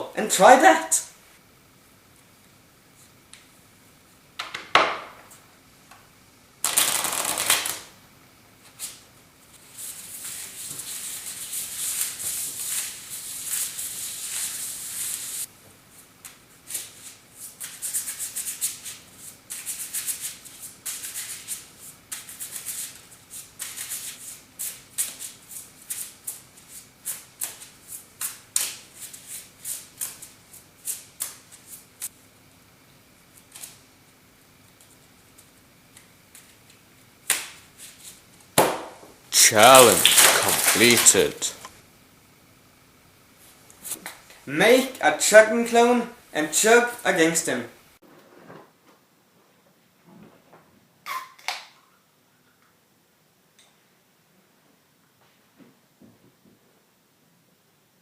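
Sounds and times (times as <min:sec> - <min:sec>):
playing cards being shuffled: 0:06.6 - 0:07.9, 0:39.4 - 0:41.6.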